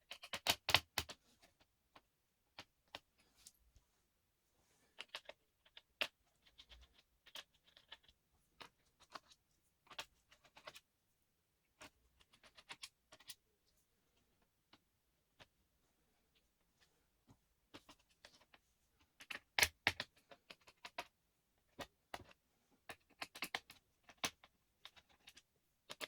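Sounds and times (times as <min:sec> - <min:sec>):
clicks and taps of laptop parts: 0:00.2 - 0:01.2, 0:19.2 - 0:21.1.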